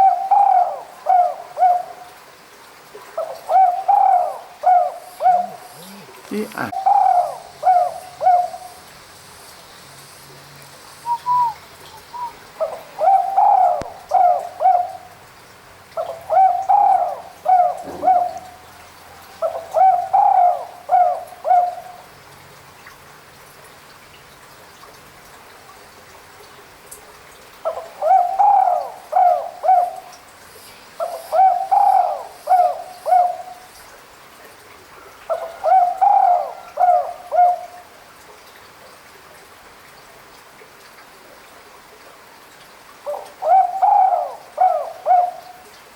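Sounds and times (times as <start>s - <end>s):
dove cooing: 0.0s - 2.1s, 3.2s - 8.8s, 11.1s - 15.1s, 16.0s - 22.0s, 27.6s - 30.2s, 31.0s - 33.6s, 35.3s - 37.8s, 43.1s - 45.6s.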